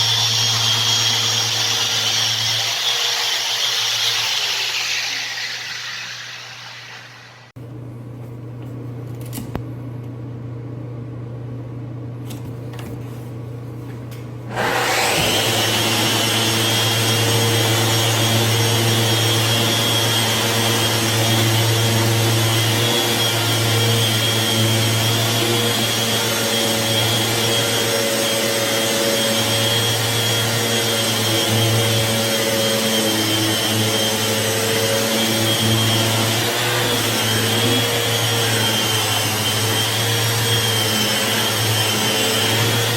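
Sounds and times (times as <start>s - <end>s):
electric sander on stone: 0.0s - 7.4s, 14.5s - 42.9s.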